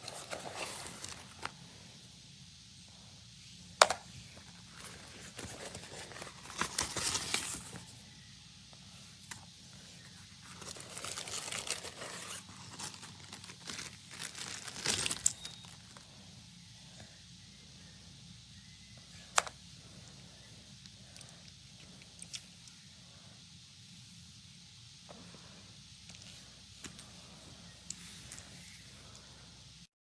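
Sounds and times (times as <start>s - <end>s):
rustling crinkling handling noise: 0.0s - 1.5s, 3.8s - 8.0s, 9.2s - 16.0s.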